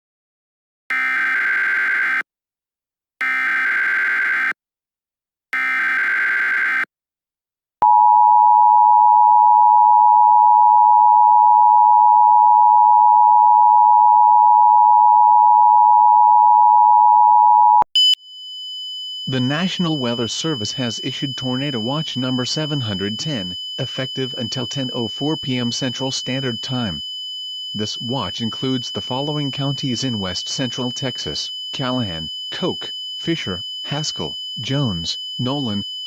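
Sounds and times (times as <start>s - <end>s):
two-tone attention signal: 18.0s - 36.0s.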